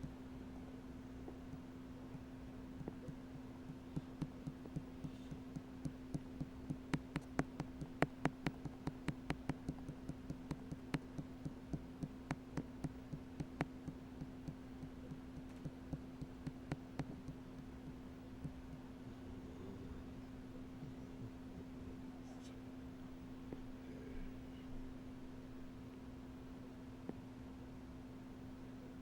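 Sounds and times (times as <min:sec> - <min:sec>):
white static: 0:00.0 - 0:23.6
steady low hum: 0:00.0 - 0:29.0
sharp clicks: 0:02.8 - 0:18.8.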